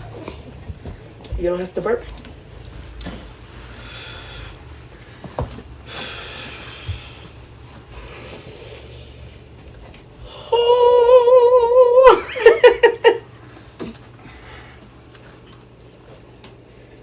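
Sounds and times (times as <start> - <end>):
person laughing: 10.6 - 13.3.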